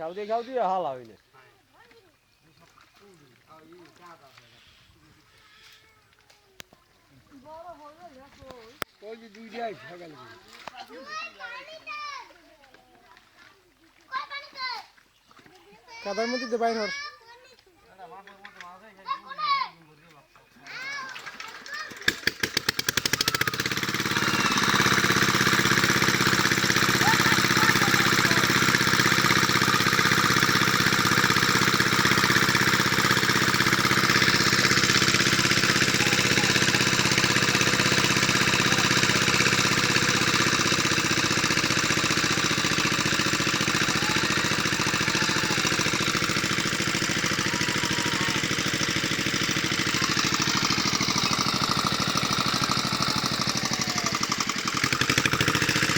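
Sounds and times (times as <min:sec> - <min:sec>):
small engine starting and running: 0:16.0 - 0:17.0, 0:20.7 - 0:55.9.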